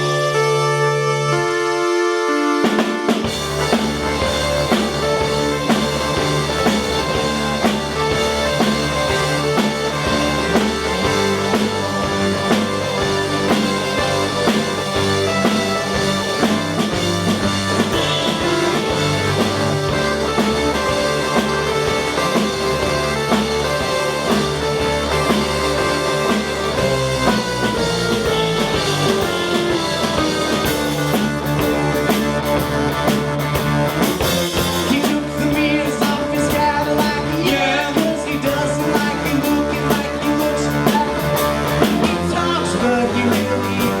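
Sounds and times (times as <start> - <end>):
rock band playing live: 2.5 - 44.0
cymbals: 2.8 - 35.1
person singing: 34.7 - 44.0.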